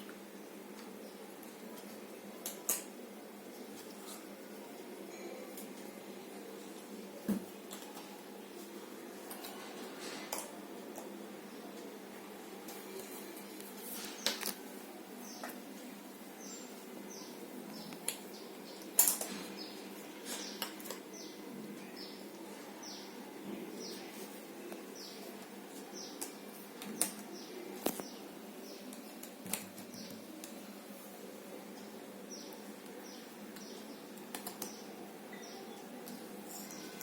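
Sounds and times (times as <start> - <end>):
jigsaw puzzle pieces clicking: 33.6 - 34.8.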